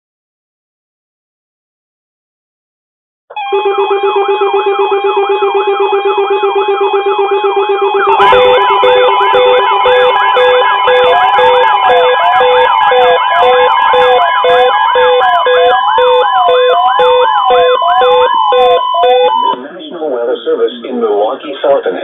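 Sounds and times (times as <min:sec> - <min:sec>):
pulsing electronic beep: 0:03.3 - 0:19.6
siren wail: 0:03.3 - 0:19.6
siren yelp: 0:03.3 - 0:19.6
steady high alert tone: 0:03.3 - 0:19.7.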